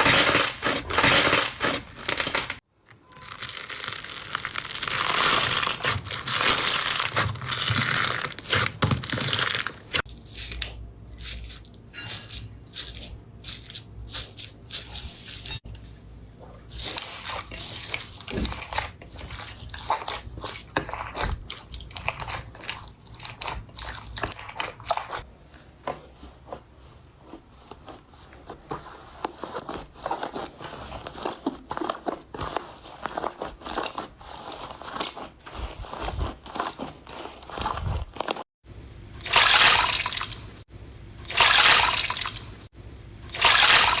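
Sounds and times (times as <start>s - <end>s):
slime crackling and popping: 3.2s - 10.0s.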